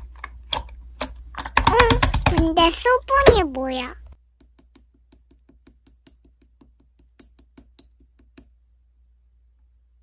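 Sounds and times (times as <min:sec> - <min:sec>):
keyboard typing: 0:01.4 - 0:03.4.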